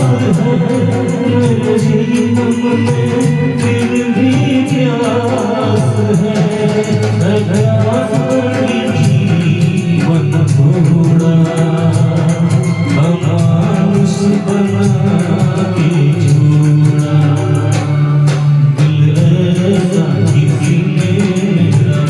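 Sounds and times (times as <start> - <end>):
song with instruments and singing: 0.0 - 22.0.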